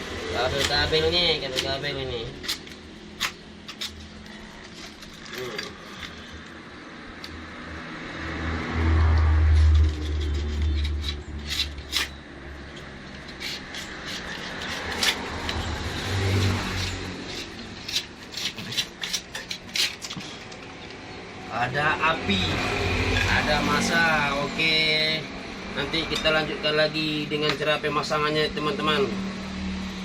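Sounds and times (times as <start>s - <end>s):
vehicle engine passing: 7.2s - 18.1s, 21.0s - 30.0s.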